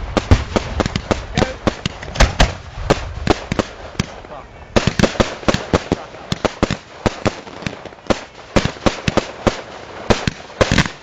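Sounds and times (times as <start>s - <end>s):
fireworks bangs: 0.0s - 11.0s.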